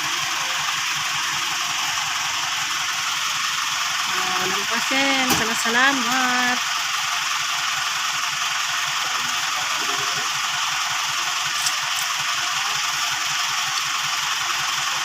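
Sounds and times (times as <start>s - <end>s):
motor running with low beat: 0.0s - 15.0s.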